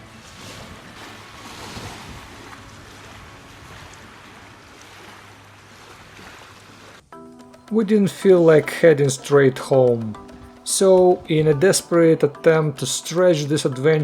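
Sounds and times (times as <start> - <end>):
wind on microphone: 0.0 - 4.8
small waves lapping: 0.0 - 14.0.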